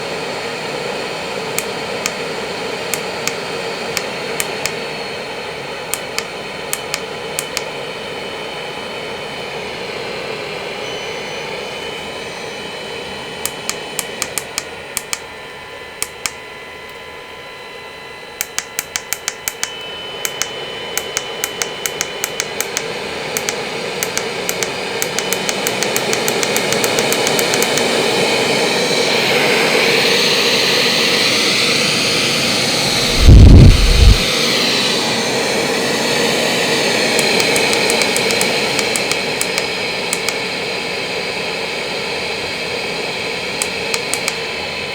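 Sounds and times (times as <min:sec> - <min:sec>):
rapid sharp clicks: 0:18.4 - 0:19.7, 0:20.3 - 0:27.9, 0:37.2 - 0:40.4
loud low thump: 0:33.0 - 0:34.2.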